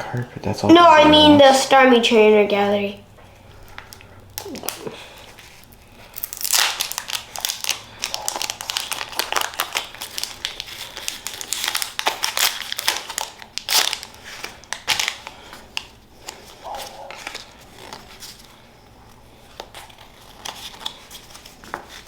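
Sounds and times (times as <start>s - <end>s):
foil wrapper crinkling and tearing: 3.6s - 18.6s, 19.4s - 22.0s.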